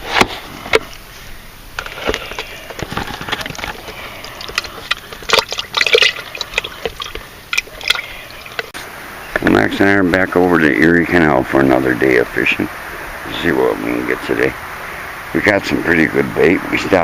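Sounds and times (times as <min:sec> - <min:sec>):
water splashing and pouring: 0:02.3 - 0:08.8.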